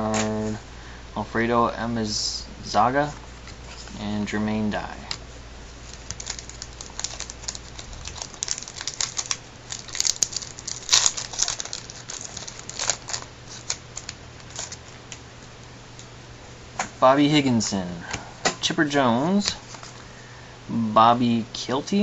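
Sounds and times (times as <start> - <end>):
wrapper crinkling: 5.7 - 15.2.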